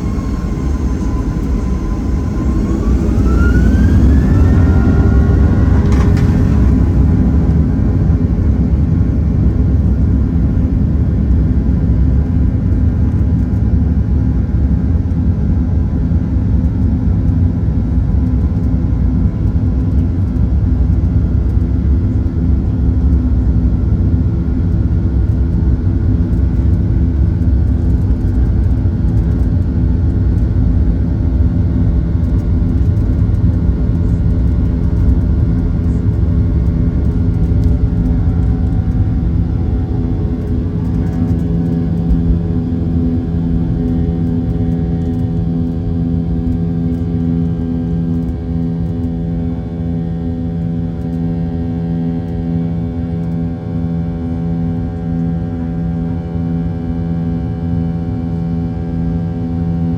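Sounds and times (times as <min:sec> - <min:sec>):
jet engines spooling up: 0:00.0 - 0:10.7, 0:32.2 - 0:45.2.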